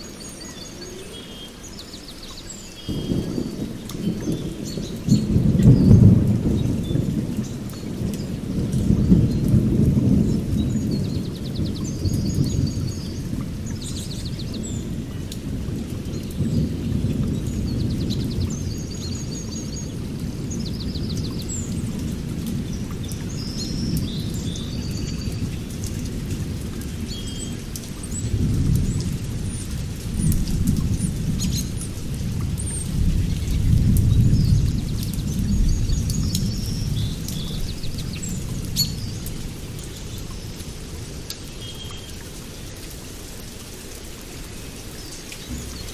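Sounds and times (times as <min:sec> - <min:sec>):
birds chirping: 0:00.0 - 0:08.1
raindrops ticking: 0:00.0 - 0:45.9
rolling thunder: 0:02.9 - 0:39.9.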